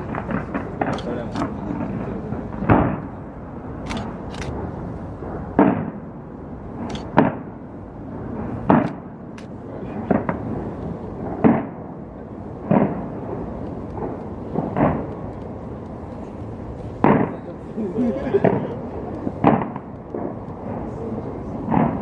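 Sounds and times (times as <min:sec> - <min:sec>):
sharp high cracks: 0:03.8 - 0:04.9, 0:06.8 - 0:07.6.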